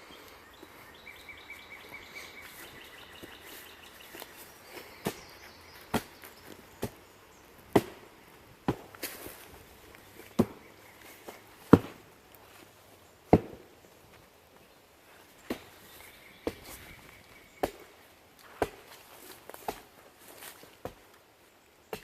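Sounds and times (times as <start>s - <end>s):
axe chopping wood: 7.7s - 9.3s, 10.3s - 10.7s, 11.6s - 12.1s, 13.3s - 13.7s, 17.6s - 19.9s.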